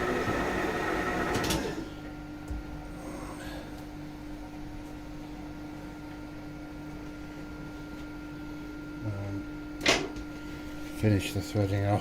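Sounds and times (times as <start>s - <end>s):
electric motor hum: 0.0s - 3.8s.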